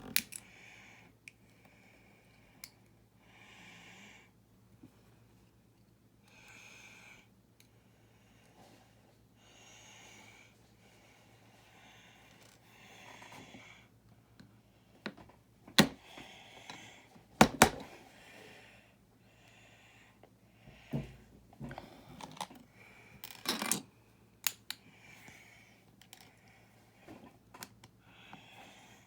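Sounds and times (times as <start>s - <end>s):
soft nasal breaths: 6.2s - 14.0s, 24.8s - 29.0s.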